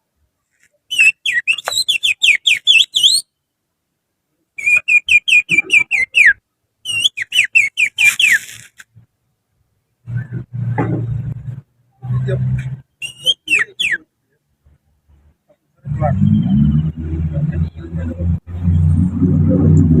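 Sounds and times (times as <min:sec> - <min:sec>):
finger whistling birdsong: 0:00.9 - 0:03.3, 0:04.6 - 0:08.4, 0:13.0 - 0:14.1.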